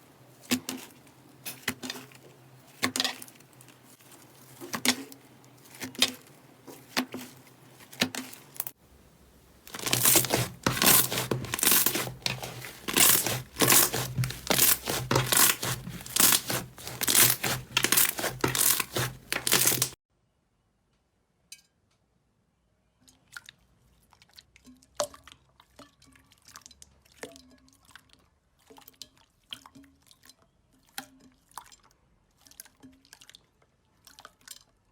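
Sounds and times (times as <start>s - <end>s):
slime crackling and popping: 9.6s - 20.0s.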